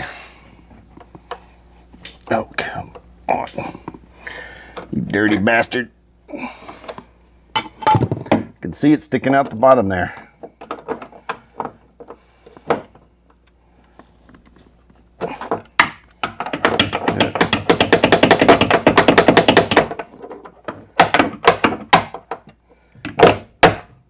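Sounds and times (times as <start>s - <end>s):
fast sharp tapping: 16.6s - 20.0s.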